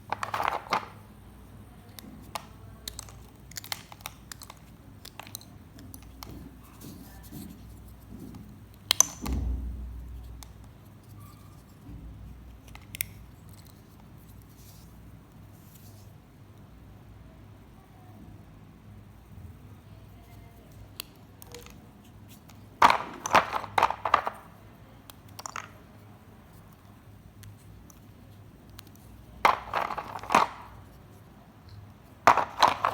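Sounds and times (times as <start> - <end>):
dry clay crunching and crackling: 31.7 - 32.9.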